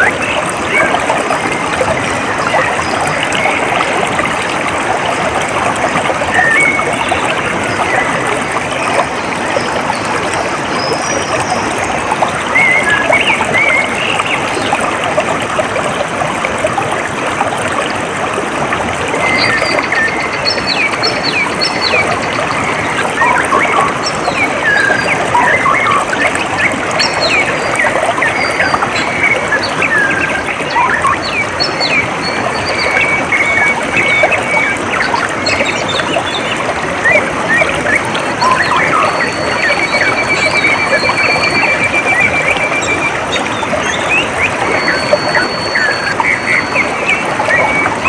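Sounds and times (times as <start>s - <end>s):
running water rushing: 0.0s - 48.0s.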